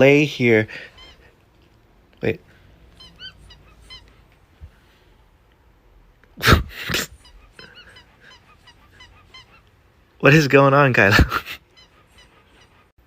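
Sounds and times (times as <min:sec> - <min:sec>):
dog whimpering: 0:03.0 - 0:04.2, 0:06.8 - 0:09.7, 0:11.7 - 0:12.9.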